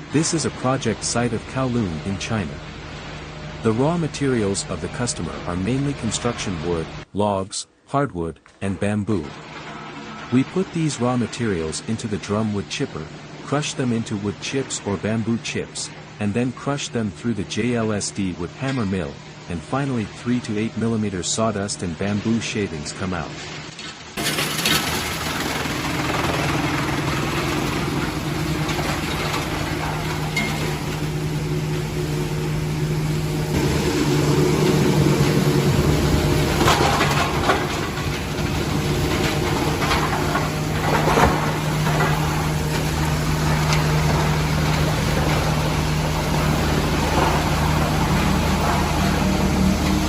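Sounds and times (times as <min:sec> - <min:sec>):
wood chipper motor hum: 0:00.0 - 0:07.0, 0:24.2 - 0:50.0.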